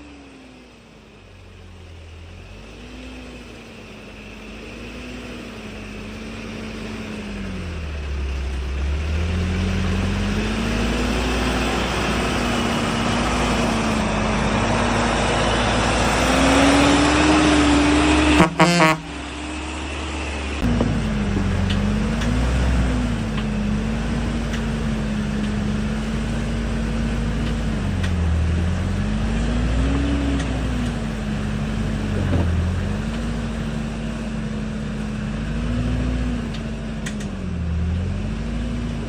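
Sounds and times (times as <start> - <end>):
dump truck engine: 0.0 - 39.0
truck horn blast: 16.4 - 19.3.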